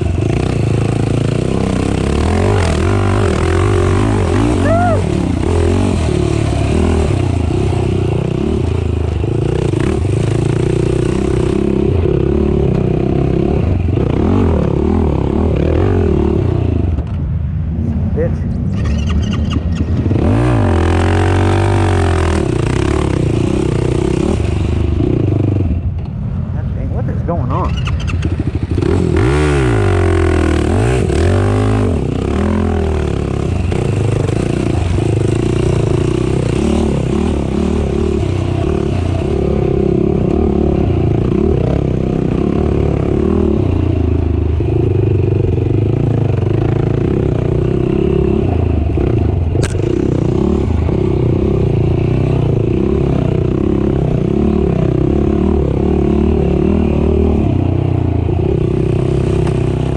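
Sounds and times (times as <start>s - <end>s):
atv engine revving: 0.0s - 59.9s
rattle and clatter over rough ground: 5.3s - 15.8s, 18.4s - 26.3s, 27.0s - 59.9s
sharp click: 49.6s - 49.9s.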